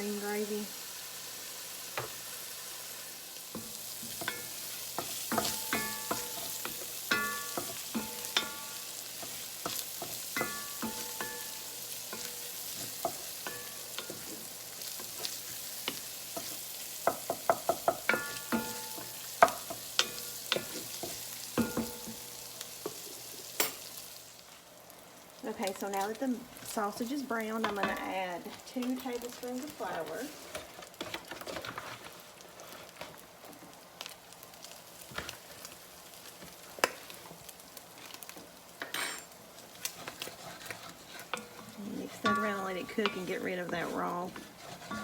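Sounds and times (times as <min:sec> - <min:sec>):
sausage sizzling in a pan: 0:00.0 - 0:45.0
utensil knocking and scraping pan: 0:40.0 - 0:45.0.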